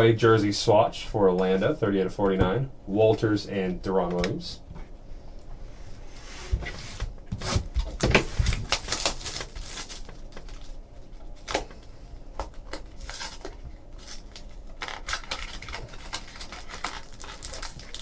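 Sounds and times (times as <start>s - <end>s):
cards and packaging rustling: 7.4s - 18.0s.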